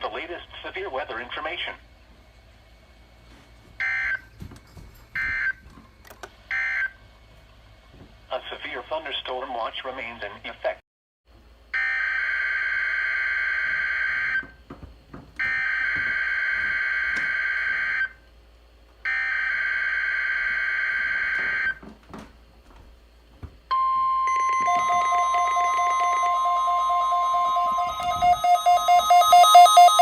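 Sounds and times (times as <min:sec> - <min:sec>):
electronic data tone bursts: 0:23.7 - 0:30.0
lower alert tone: 0:23.7 - 0:30.0
steady alert tone: 0:23.7 - 0:30.0.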